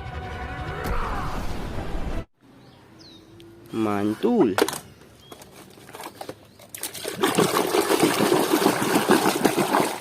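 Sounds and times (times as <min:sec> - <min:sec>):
water running and splashing: 0:06.6 - 0:10.0.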